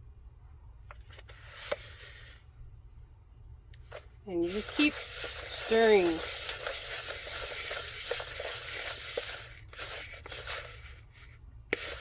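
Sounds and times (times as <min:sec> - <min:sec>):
scraping rustle of stirring: 0:01.2 - 0:02.5, 0:03.9 - 0:12.0.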